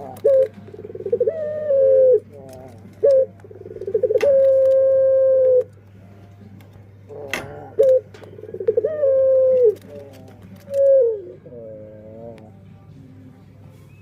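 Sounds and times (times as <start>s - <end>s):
dove cooing: 0.0s - 12.8s
low steady hum: 0.0s - 14.0s.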